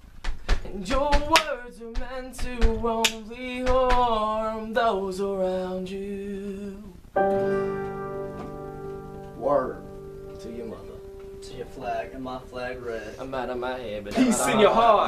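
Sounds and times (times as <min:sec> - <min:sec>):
strummed acoustic guitar chord: 0:07.2 - 0:13.9.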